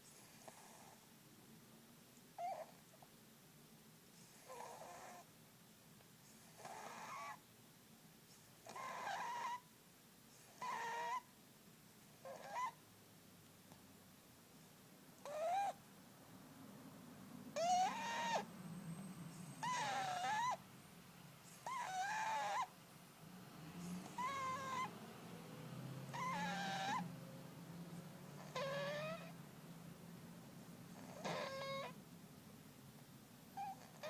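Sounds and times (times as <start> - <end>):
cat snoring with squeaky whistle: 0.0 - 1.1, 2.4 - 2.9, 4.2 - 5.3, 6.4 - 7.4, 8.6 - 9.7, 10.4 - 11.3, 12.2 - 12.8, 15.2 - 15.8, 17.5 - 20.6, 21.4 - 22.8, 23.6 - 29.4, 30.9 - 32.0, 33.5 - 34.0.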